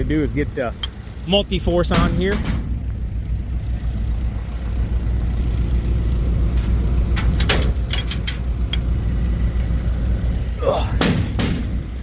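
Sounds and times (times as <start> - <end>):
vehicle engine idling: 0.0 - 12.0
metallic clicks and knocks: 1.8 - 2.7, 6.5 - 8.9.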